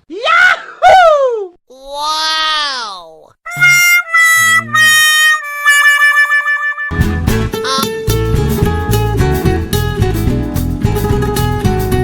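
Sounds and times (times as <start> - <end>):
bass line: 3.5 - 12.0
fast strummed guitar: 6.9 - 12.0.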